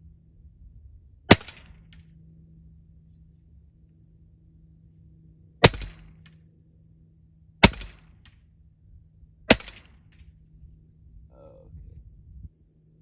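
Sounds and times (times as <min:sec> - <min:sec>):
air rifle shots: 0:01.3 - 0:01.8, 0:05.6 - 0:06.2, 0:07.6 - 0:08.3, 0:09.5 - 0:10.0.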